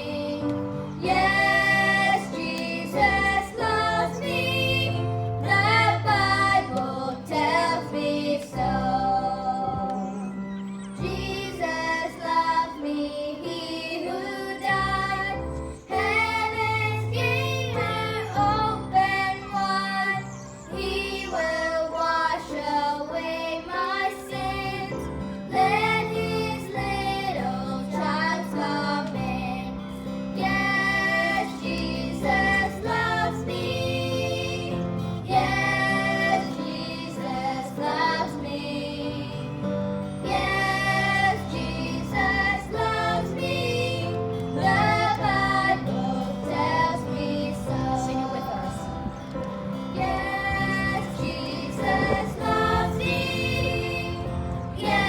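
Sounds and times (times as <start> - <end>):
instrumental accompaniment with bass: 24.5 - 55.0.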